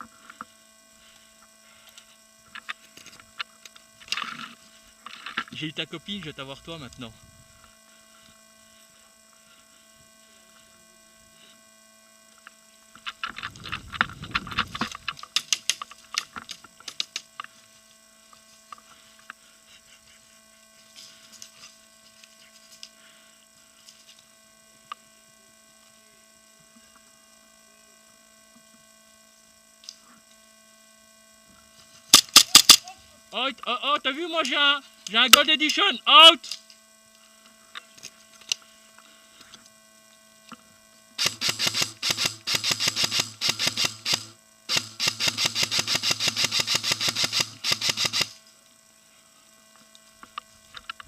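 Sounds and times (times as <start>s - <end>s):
electrical hum: 0.0s - 51.0s
sharp clicks: 32.1s - 32.9s, 41.2s - 48.4s.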